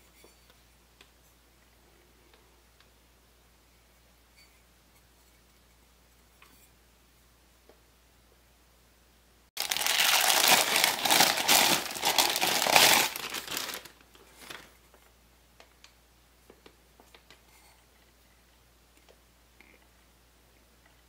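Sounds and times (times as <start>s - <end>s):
packaging wrap crinkling: 9.6s - 14.8s.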